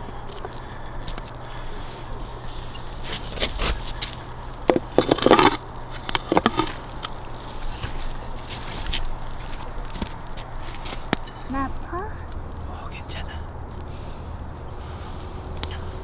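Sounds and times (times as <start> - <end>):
scraping: 0.0 - 11.3
campfire crackling: 0.0 - 16.0.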